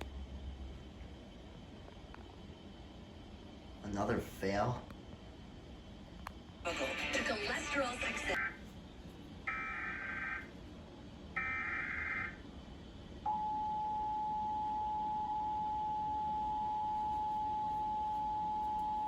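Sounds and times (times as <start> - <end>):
steady attention signal tone: 13.2 - 19.0.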